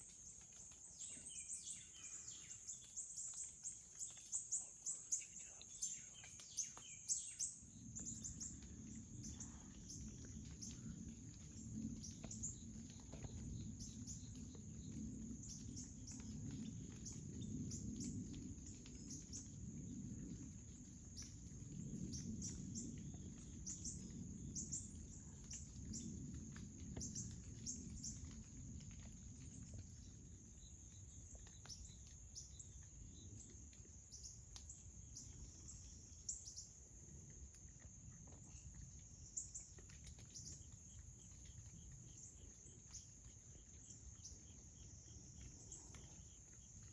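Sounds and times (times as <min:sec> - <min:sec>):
insect chorus: 0:00.0 - 0:46.9
low rumble: 0:05.4 - 0:32.0.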